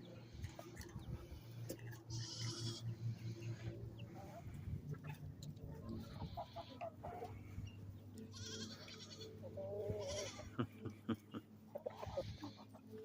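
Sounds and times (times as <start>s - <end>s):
chickens squawking: 0.0s - 13.0s.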